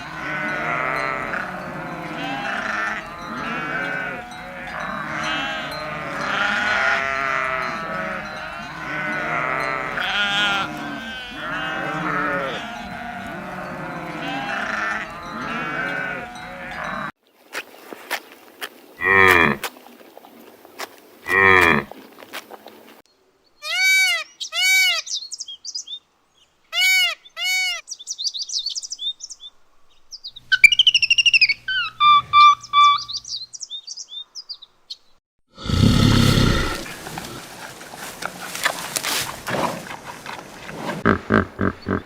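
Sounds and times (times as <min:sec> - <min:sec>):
sheep bleating: 0:00.0 - 0:17.1, 0:21.3 - 0:21.9.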